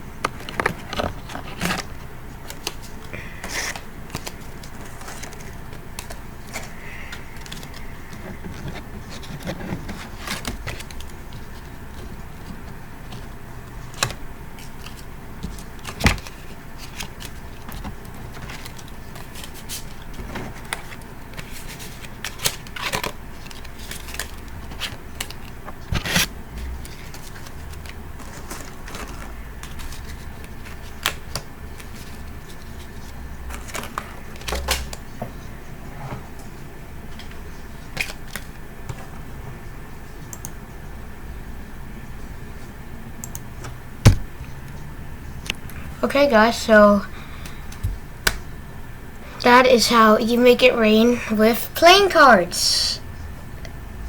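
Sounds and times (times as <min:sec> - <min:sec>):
low background hum: 0:00.0 - 0:54.0
playing cards flicking and rustling: 0:00.2 - 0:35.2, 0:37.2 - 0:39.1.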